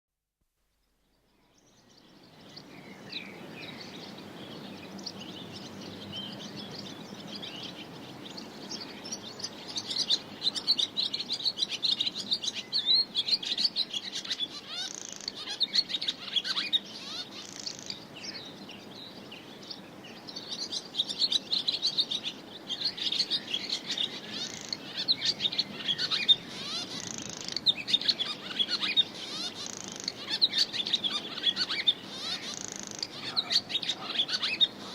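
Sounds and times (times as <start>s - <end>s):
low background noise: 0.3s - 34.9s
swallow twittering: 8.4s - 18.4s, 20.4s - 34.9s.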